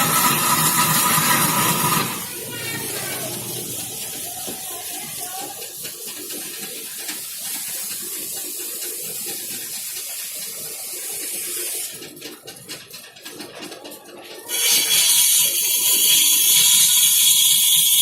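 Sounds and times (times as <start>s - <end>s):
lathe tool cutting wood hissing: 0.0s - 5.3s, 14.5s - 18.0s.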